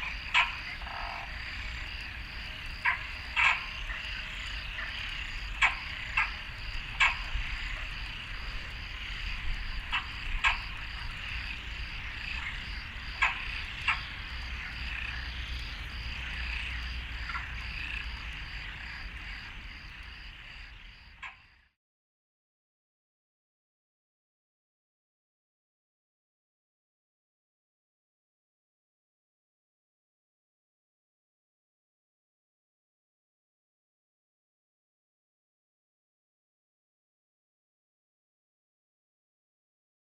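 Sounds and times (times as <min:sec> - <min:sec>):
frog croaks: 0:00.0 - 0:21.8
frogs chorus: 0:00.0 - 0:21.8.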